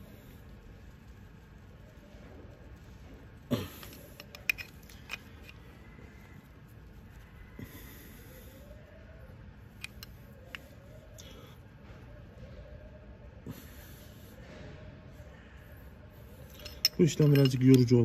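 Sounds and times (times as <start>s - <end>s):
tools clicking on metal parts: 3.8s - 5.6s, 16.5s - 18.0s.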